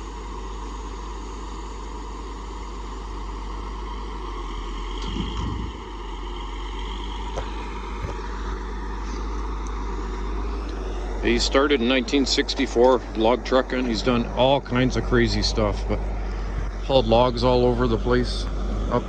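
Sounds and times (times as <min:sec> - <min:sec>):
diesel engine running: 0:00.6 - 0:19.0
sharp knocks: 0:05.0 - 0:06.0
thump: 0:05.0 - 0:06.0.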